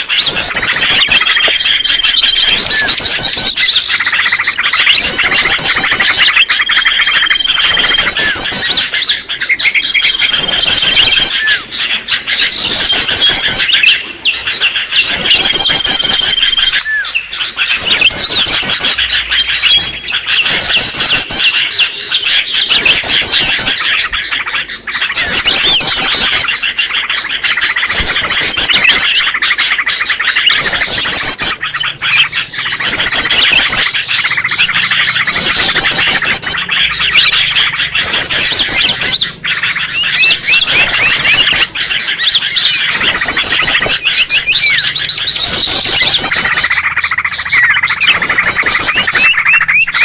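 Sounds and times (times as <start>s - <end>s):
bird chattering trills: 0.0s - 50.0s
bird held whistle: 15.0s - 17.0s.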